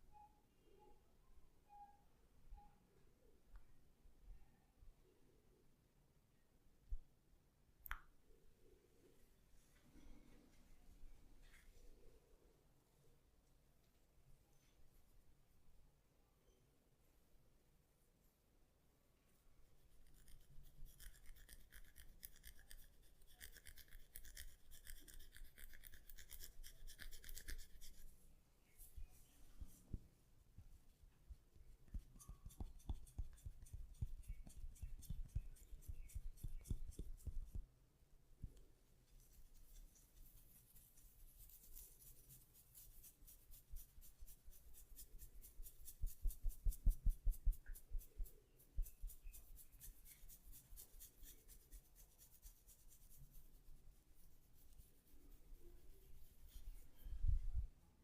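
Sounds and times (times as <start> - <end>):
hair crackling and scratching: 39.2 - 53.6.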